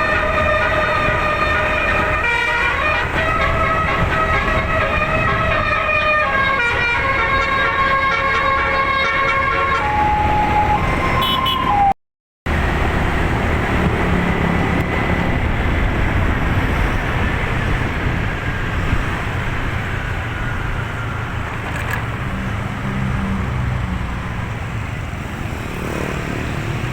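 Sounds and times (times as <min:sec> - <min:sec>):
musical bus air horn: 0:00.0 - 0:11.9
bus engine and road noise: 0:00.0 - 0:26.9.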